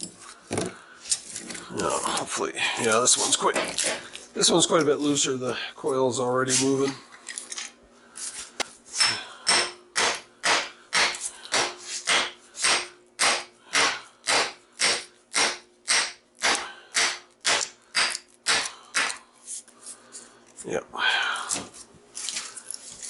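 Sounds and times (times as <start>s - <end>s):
hammer striking metal: 9.0s - 19.2s.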